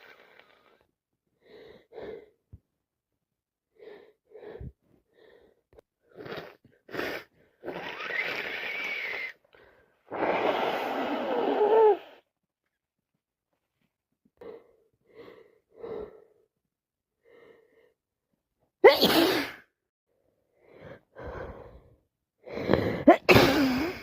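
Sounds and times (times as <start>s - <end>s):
woman blowing her nose: 6.2s - 9.4s, 10.1s - 12.2s, 18.9s - 19.6s.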